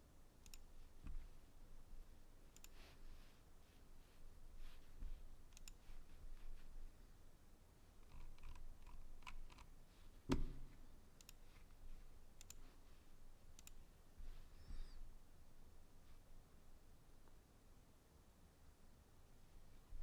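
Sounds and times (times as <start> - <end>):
computer mouse clicks: 0.4 - 1.2, 2.5 - 2.9, 5.5 - 5.9, 8.0 - 9.7, 11.2 - 11.7, 12.4 - 12.6, 13.5 - 13.8.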